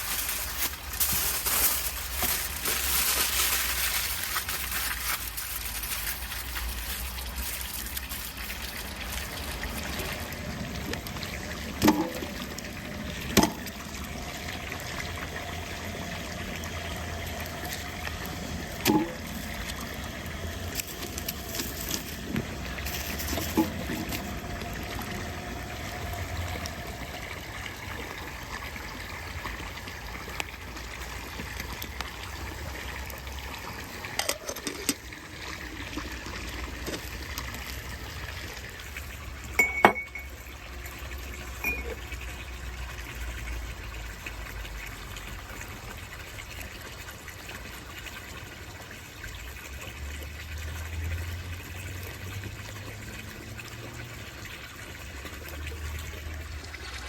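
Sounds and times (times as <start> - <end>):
water trickling: 0.0 - 57.0.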